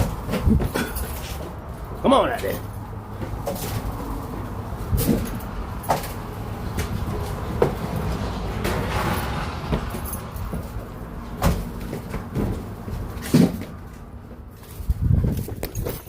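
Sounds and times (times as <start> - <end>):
sharp knocks and bumps: 0.0 - 1.6, 3.1 - 16.0.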